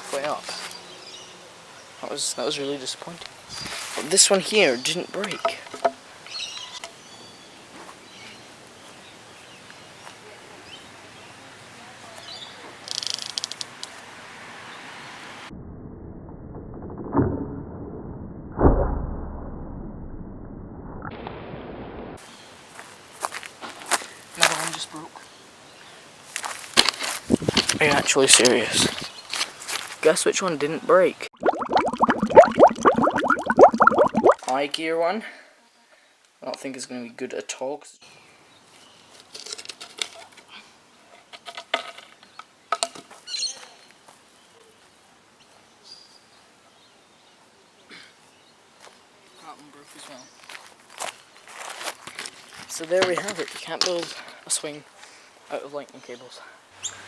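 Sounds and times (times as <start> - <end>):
rope swing clicks and rustles: 39.1 - 40.5.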